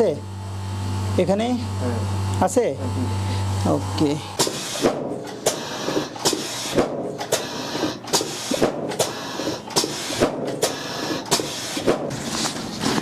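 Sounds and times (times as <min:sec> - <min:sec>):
sharp knocks or clicks: 0:04.4 - 0:12.1.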